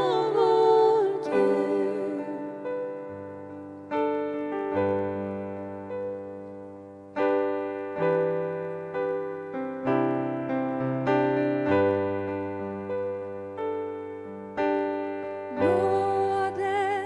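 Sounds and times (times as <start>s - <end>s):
solo piano chords: 0.0s - 17.0s.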